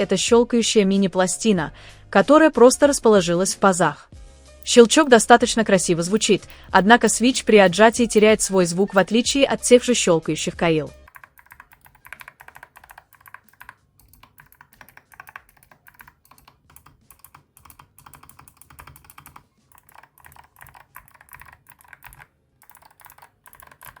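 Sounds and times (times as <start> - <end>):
clicky mechanical keyboard typing: 4.6 - 9.4, 11.1 - 24.0.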